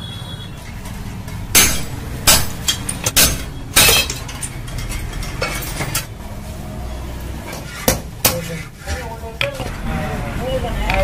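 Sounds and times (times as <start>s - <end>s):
tool striking metal: 0.8s - 6.1s.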